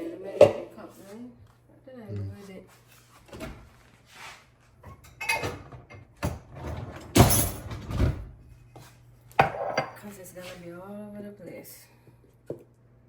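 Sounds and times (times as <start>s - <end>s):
kitchen knocks and scrapes: 4.8s - 10.6s.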